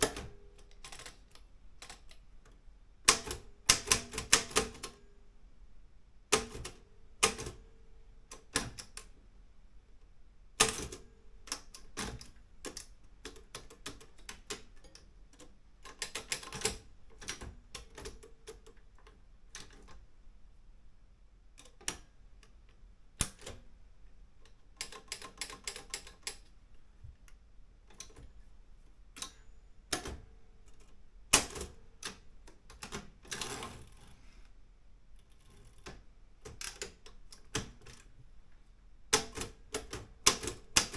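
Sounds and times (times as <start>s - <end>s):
manual typewriter keystrokes: 0.0s - 2.3s, 3.1s - 5.0s, 6.3s - 7.7s, 8.3s - 9.1s, 10.6s - 20.0s, 24.4s - 26.5s, 29.2s - 34.1s, 35.2s - 38.1s, 39.1s - 40.9s.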